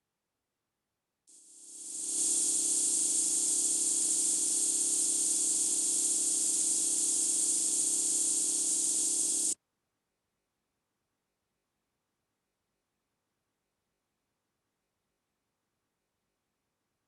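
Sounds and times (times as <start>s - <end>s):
lathe hiss and hum: 1.4s - 9.6s.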